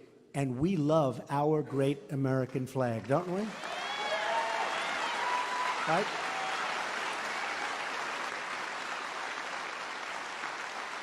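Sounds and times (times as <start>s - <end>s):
crowd applauding and cheering: 3.1s - 11.0s.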